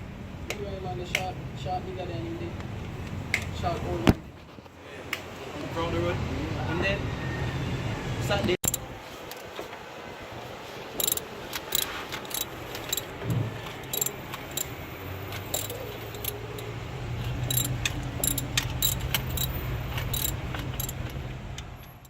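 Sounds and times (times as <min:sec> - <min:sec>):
metal tools clinking and rattling: 0:08.6 - 0:08.9, 0:11.0 - 0:16.7, 0:17.3 - 0:21.2.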